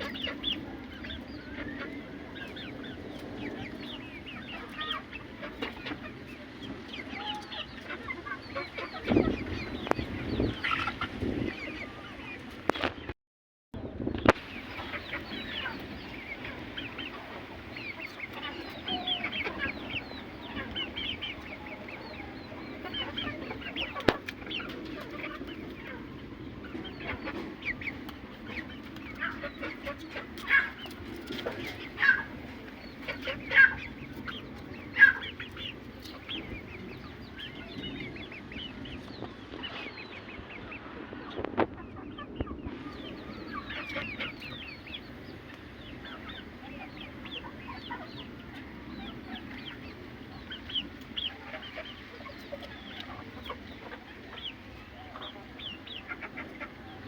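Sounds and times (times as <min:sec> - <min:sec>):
chickens clucking: 0:00.0 - 0:13.1, 0:13.9 - 0:57.0
loud chicken calls: 0:14.3 - 0:38.6, 0:42.0 - 0:57.0.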